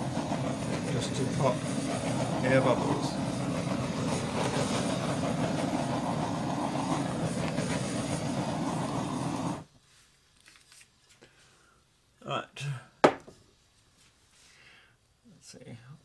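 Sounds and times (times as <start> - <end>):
gas torch flame hissing: 0.0 - 9.7.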